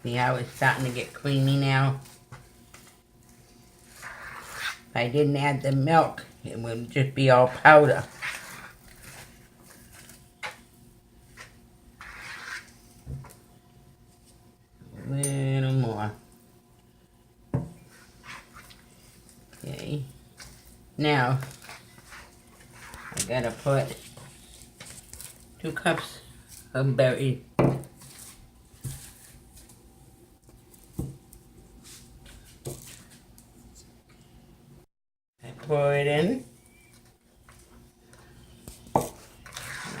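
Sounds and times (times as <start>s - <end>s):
spoon scraping mixing bowl: 7.8s - 10.7s, 11.3s - 13.0s, 17.8s - 20.8s, 21.4s - 25.3s, 39.0s - 40.0s
light scraping and rustling: 21.4s - 25.4s, 36.7s - 40.0s.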